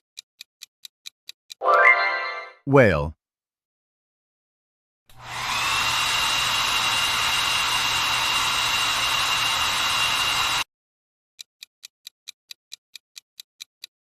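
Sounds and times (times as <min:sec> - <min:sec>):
hair dryer switch: 0:05.1 - 0:10.6
hair dryer blowing with whine: 0:05.1 - 0:10.7.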